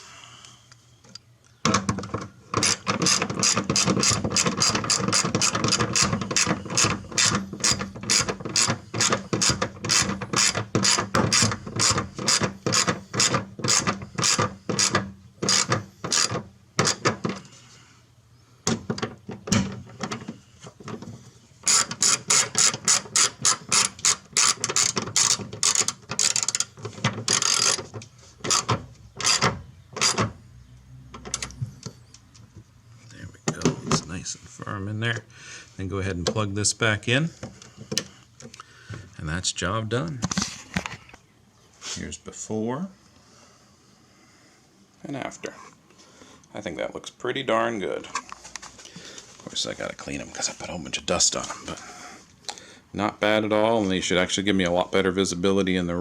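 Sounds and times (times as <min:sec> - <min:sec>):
ratchet wrench clicking: 0:21.6 - 0:27.8.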